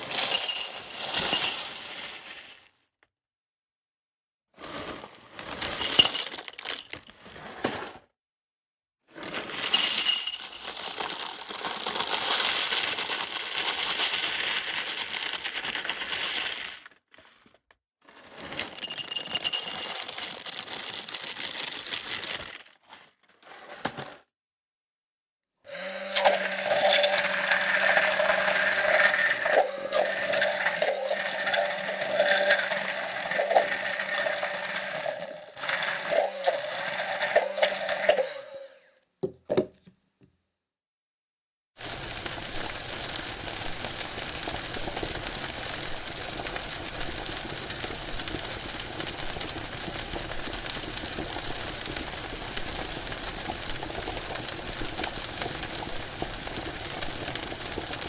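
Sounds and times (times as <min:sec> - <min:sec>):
appliance hum: 0:25.7 - 0:38.9.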